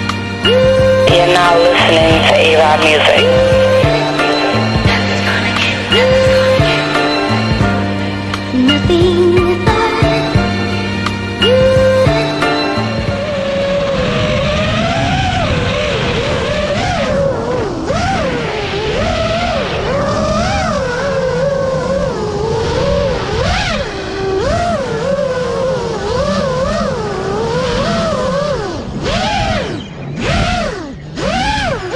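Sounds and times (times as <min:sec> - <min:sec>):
quadcopter motors whining: 0:00.0 - 0:31.9.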